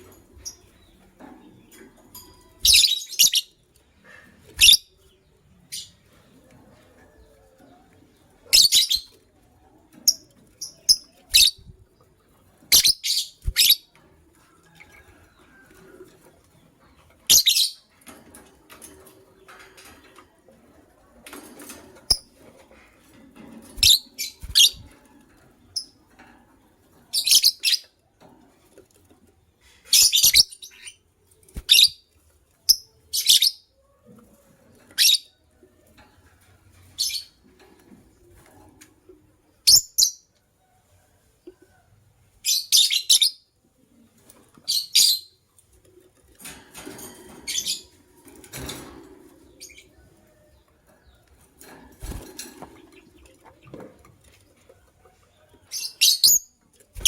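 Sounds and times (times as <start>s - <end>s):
lovebirds chirping: 0.0s - 3.6s, 4.4s - 9.2s, 10.0s - 13.9s, 23.6s - 25.0s, 29.6s - 33.7s.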